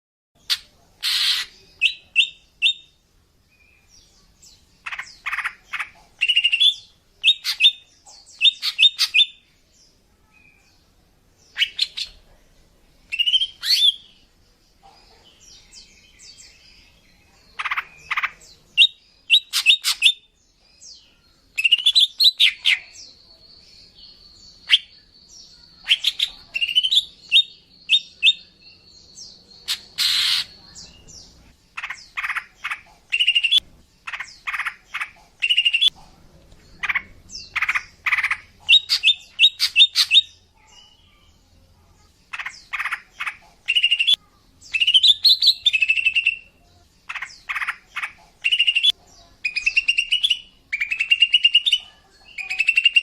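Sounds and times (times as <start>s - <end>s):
bird high chirps: 0.4s - 12.3s, 13.1s - 36.0s, 36.6s - 53.0s.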